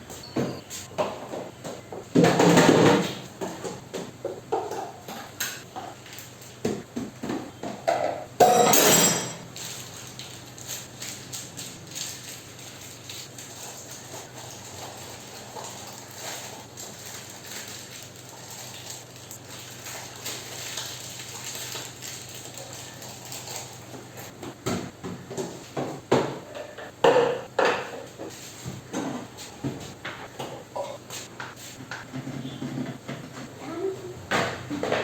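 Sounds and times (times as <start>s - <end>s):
dishes and utensils clattering: 7.6s - 9.8s, 29.0s - 33.4s.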